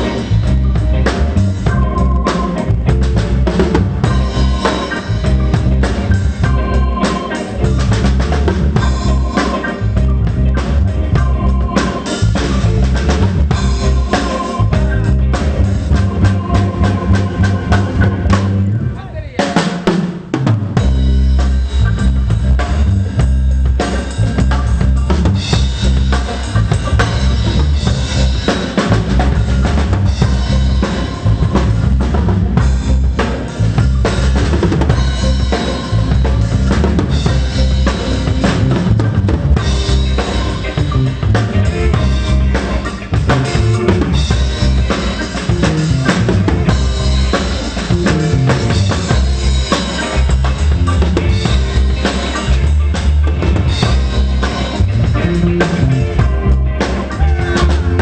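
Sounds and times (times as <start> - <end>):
bass line: 0.0 - 58.0
drum kit hits: 0.0 - 58.0
live pop band playing: 0.0 - 58.0.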